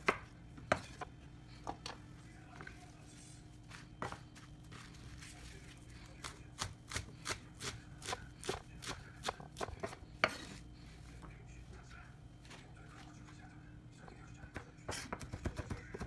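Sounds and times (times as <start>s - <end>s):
knife chopping on cutting board: 0.0s - 1.1s, 6.6s - 10.6s.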